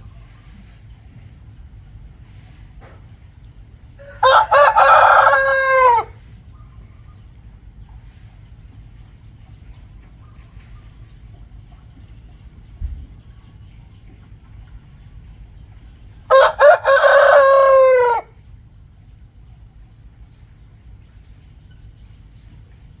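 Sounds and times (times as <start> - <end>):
rooster crowing: 3.9 - 6.2, 16.3 - 18.4
low thump: 12.8 - 13.2.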